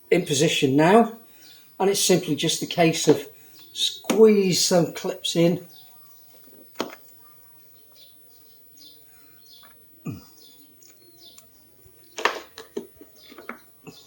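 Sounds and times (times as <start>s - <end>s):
plastic clicks and knocks: 6.4s - 7.1s, 12.1s - 13.7s.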